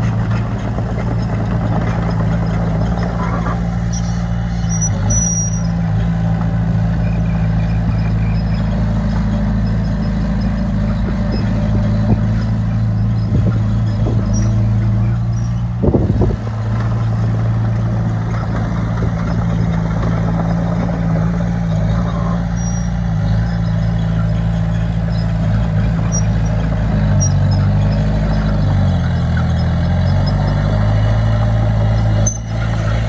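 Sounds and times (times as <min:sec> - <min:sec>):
heavy diesel engine running: 0:00.0 - 0:33.0
high-pitched squeal: 0:02.8 - 0:06.1, 0:21.4 - 0:33.0.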